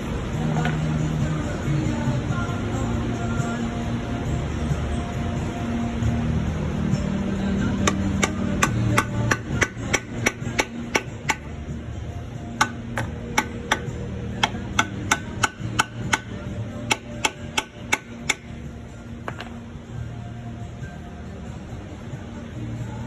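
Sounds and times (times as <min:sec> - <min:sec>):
light hammer taps on metal: 0:12.6 - 0:16.3, 0:19.3 - 0:19.6.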